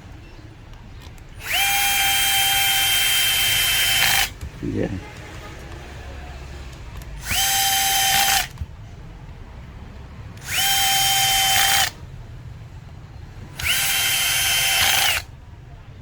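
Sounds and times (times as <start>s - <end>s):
power drill whining: 1.3s - 4.4s, 7.2s - 8.6s, 10.4s - 12.0s, 13.6s - 15.3s.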